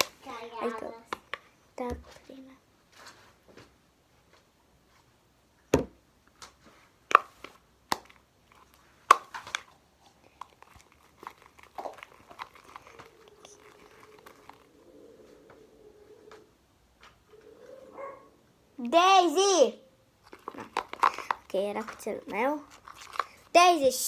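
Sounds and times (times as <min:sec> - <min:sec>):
slime popping and squelching: 0:07.0 - 0:14.7, 0:20.2 - 0:23.7.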